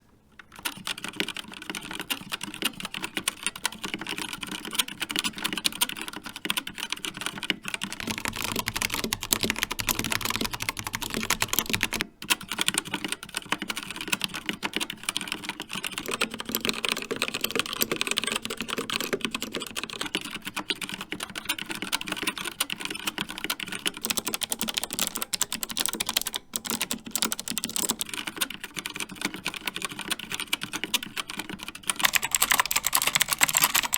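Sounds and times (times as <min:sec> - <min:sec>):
typing on mechanical keyboards: 0:00.4 - 0:33.9.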